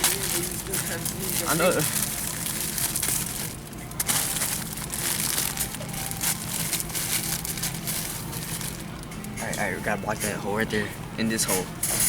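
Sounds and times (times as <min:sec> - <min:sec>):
plastic wrapping rustling: 0:00.0 - 0:09.4.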